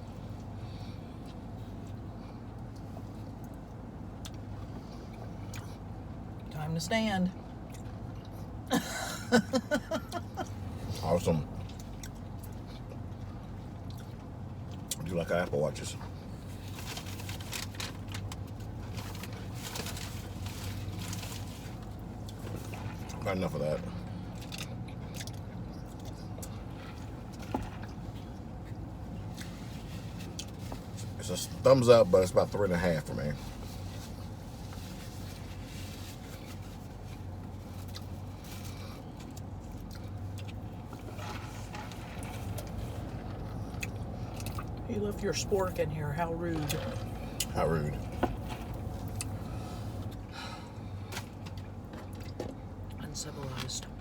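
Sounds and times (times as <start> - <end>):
steady low hum: 0.0 - 54.0
chewing: 1.2 - 5.9, 7.4 - 8.6, 10.4 - 15.1, 23.8 - 31.1, 36.2 - 44.9, 46.6 - 50.2.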